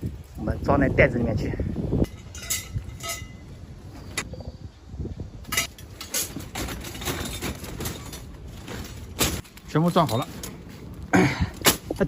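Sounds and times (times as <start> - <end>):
copper pipes clinking: 2.0 - 4.3, 5.4 - 10.6.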